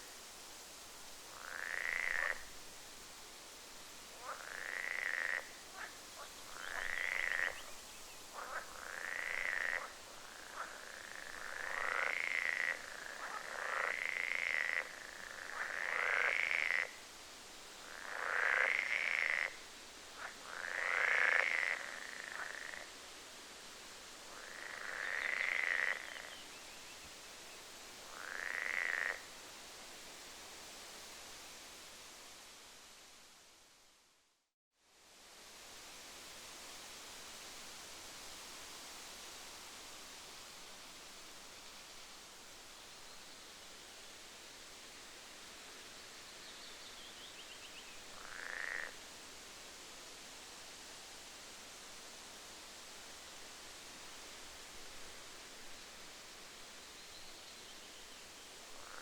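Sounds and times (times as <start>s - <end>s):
faint hiss: 0.0s - 59.0s
frogs croaking: 1.3s - 2.6s, 4.2s - 17.0s, 17.8s - 19.6s, 20.2s - 22.9s, 24.3s - 26.4s, 28.1s - 29.3s, 48.1s - 49.0s, 58.7s - 59.0s.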